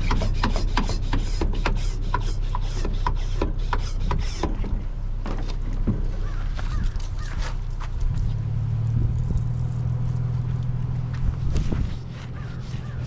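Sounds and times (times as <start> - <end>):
steady low rumble: 4.5 - 13.0
kayak hulls rubbing and scraping: 11.4 - 13.0.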